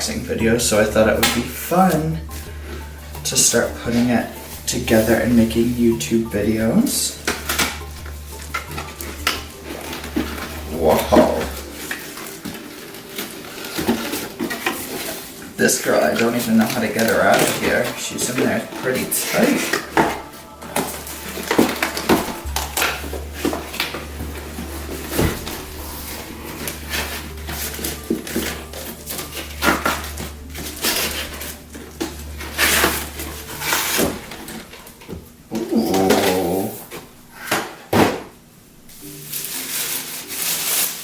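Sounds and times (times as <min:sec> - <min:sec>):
low hum: 0:16.2 - 0:35.9.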